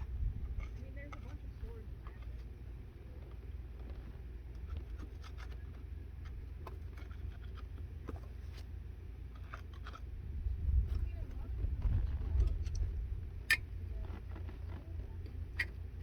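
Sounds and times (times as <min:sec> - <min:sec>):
low rumble: 0:10.0 - 0:14.1.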